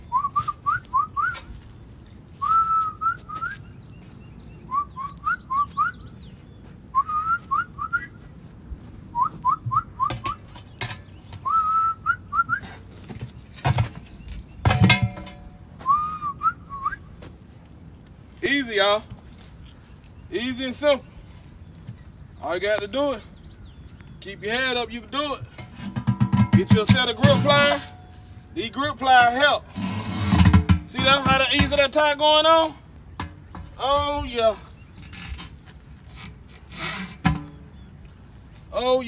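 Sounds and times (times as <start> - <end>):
person whistling a tune: 0.1 - 1.5, 2.4 - 3.6, 4.7 - 6.0, 7.0 - 8.2, 9.2 - 10.4, 11.4 - 12.7, 15.8 - 17.0
sharp knocks with metallic ring: 14.6 - 15.6, 25.6 - 28.2.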